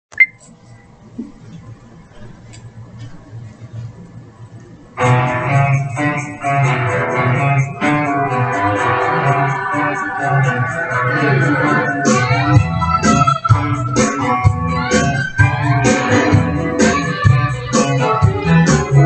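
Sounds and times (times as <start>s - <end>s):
guitar band playing: 5.0s - 19.0s.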